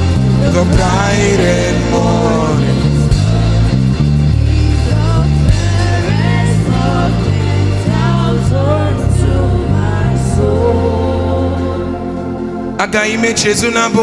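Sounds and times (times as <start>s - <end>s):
bass line: 0.0s - 14.0s
gospel band playing: 0.0s - 14.0s
person singing: 0.2s - 3.7s, 4.4s - 14.0s.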